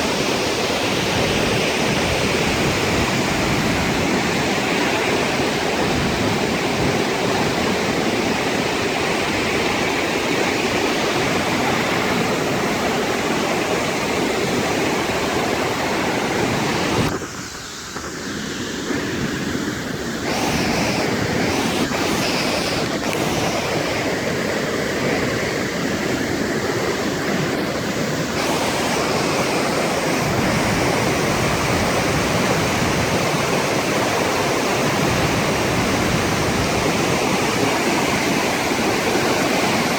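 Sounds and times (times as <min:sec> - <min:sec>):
water rushing over waterfall: 0:00.0 - 0:39.9.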